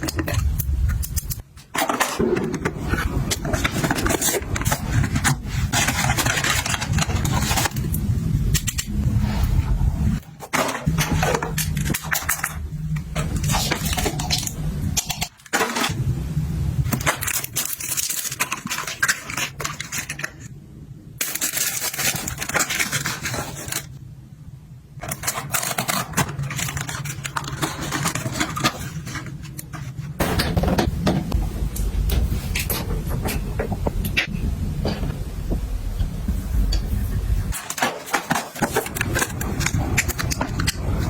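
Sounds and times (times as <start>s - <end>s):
low hum: 2.4s - 19.1s.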